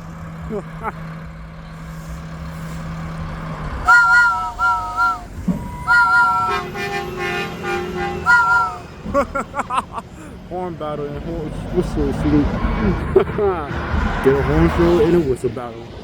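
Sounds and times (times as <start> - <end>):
diesel engine humming: 0.0 - 16.0
three-note train whistle: 3.8 - 9.0
truck horn honking: 3.8 - 10.1.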